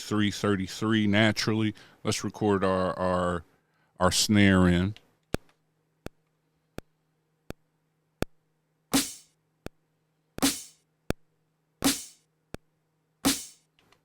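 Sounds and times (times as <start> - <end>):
snare drum hits: 9.0 - 9.3, 10.4 - 10.8, 11.8 - 12.2, 13.2 - 13.6.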